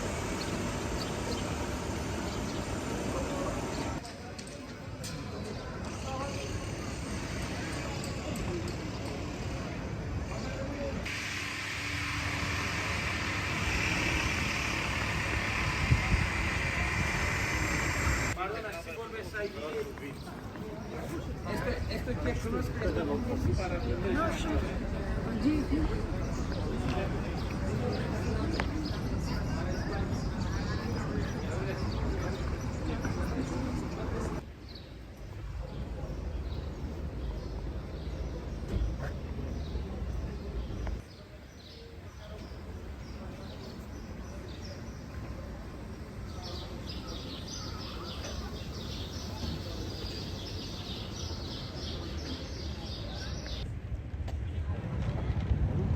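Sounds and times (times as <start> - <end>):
low street rumble: 0.0 - 55.9
passing traffic: 11.0 - 18.4.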